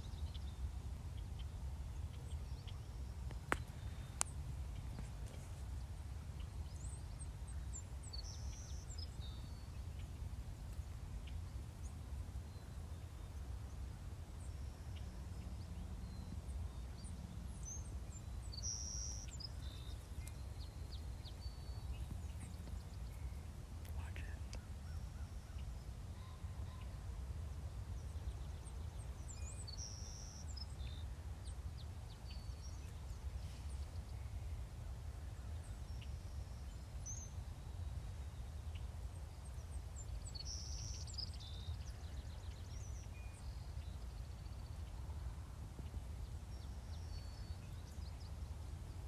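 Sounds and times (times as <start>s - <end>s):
low outdoor rumble: 0.0s - 37.4s
songbird chirps: 0.0s - 49.0s.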